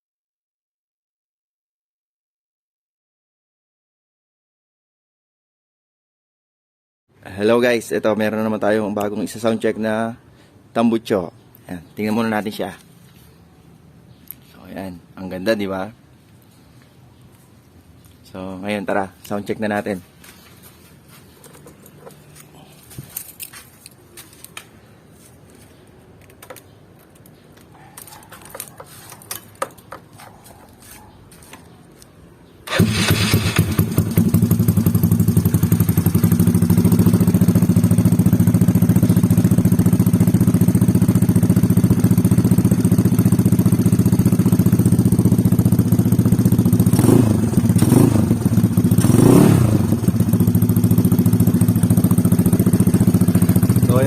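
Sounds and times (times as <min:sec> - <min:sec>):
scooter engine idling: 0:32.7 - 0:54.0.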